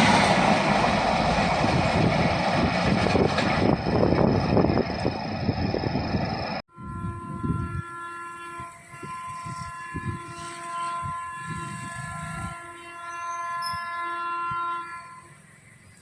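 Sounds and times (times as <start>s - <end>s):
loud passing train noise: 0.0s - 16.0s
low train rumble: 0.0s - 16.0s
train horn long blast: 6.7s - 15.7s.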